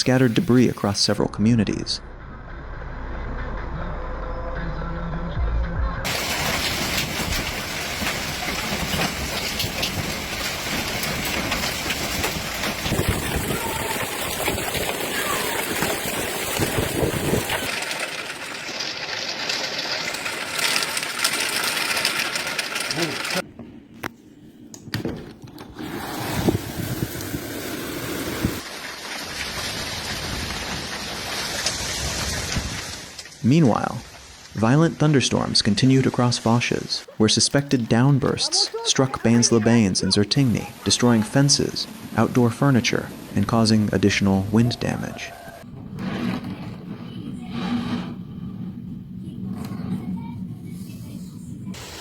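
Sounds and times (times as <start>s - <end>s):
heavy rain pouring: 6.1s - 23.4s, 25.8s - 35.0s, 36.0s - 48.1s, 51.0s - 52.0s.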